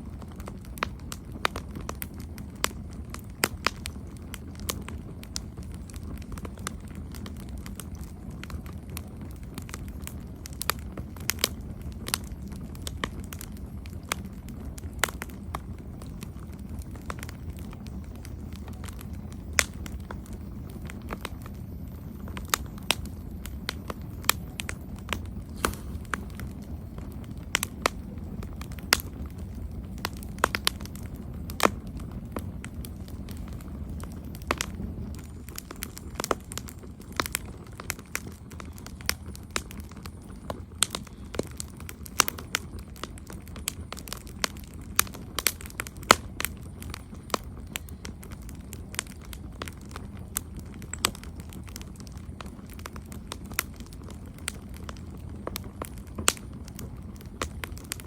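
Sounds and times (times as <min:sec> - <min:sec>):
campfire crackling: 0:00.0 - 0:58.0
low steady rumble: 0:00.0 - 0:58.0.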